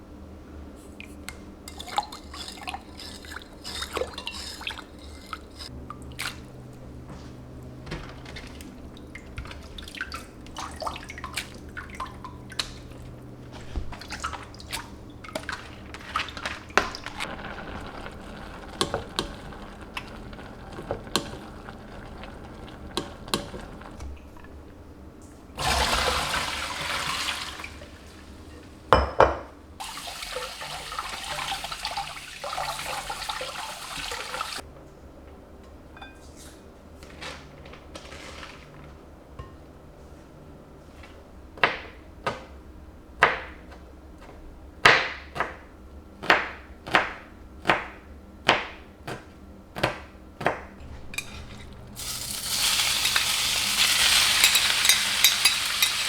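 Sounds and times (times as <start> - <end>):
faint steady hum: 0.0 - 37.1
kitchen tap running: 1.7 - 24.8, 25.6 - 34.6, 50.8 - 56.0.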